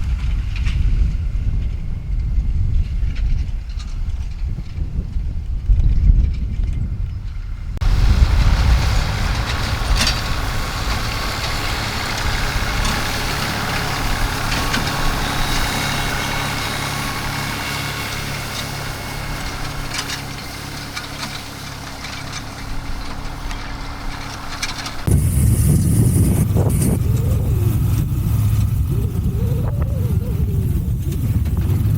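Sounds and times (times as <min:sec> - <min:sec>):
tractor engine running: 0:06.4 - 0:31.9.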